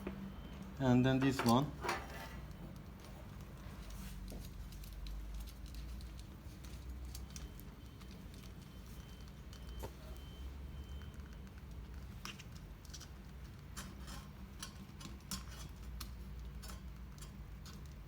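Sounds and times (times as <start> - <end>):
clicks and taps of clock parts: 1.2 - 2.0.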